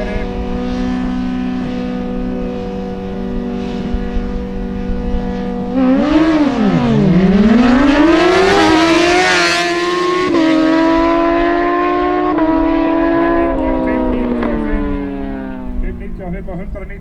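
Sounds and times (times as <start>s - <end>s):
motorcycle engines revving: 0.0s - 17.0s.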